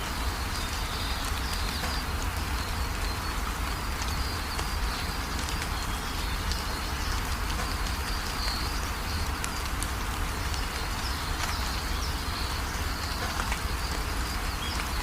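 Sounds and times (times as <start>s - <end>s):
rain pattering: 0.0s - 15.0s.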